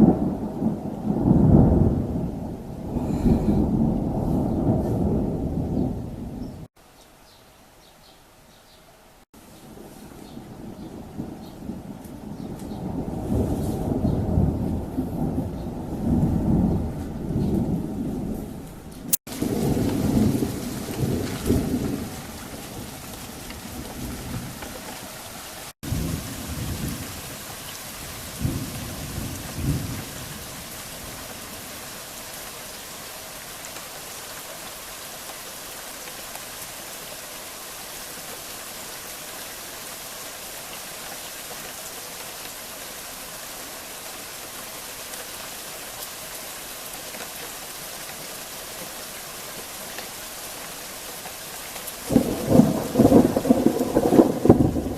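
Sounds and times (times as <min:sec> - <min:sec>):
thunder rumbling: 0:00.0 - 0:06.7, 0:09.7 - 0:31.8, 0:52.1 - 0:54.9
rain falling: 0:00.0 - 0:54.9.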